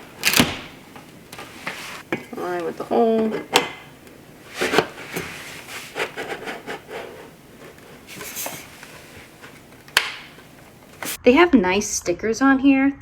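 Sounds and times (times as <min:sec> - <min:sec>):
plastic parts clicking and knocking: 0:00.2 - 0:05.3.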